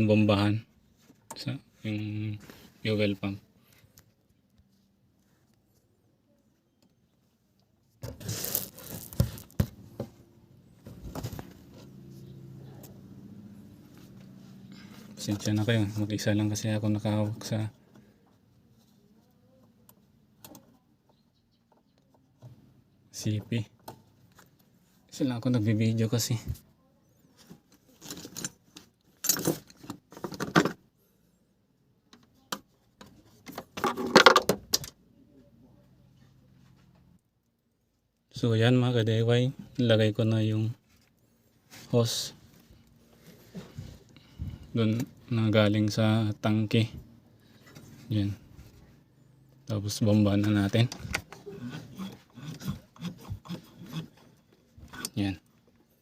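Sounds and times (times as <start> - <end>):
rubbing and scraping handling noise: 7.2 - 20.9, 26.2 - 31.0, 32.2 - 34.6, 40.7 - 45.5, 46.6 - 56.0.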